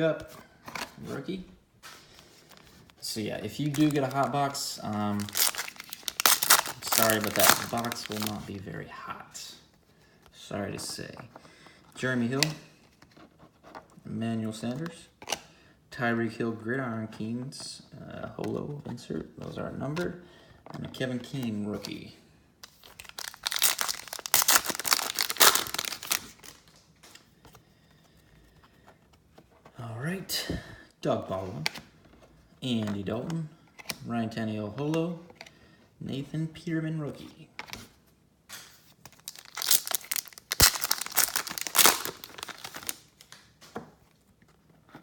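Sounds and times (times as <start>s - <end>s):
foil wrapper tearing and crinkling: 3.6s - 8.5s, 22.7s - 26.6s, 39.1s - 43.4s.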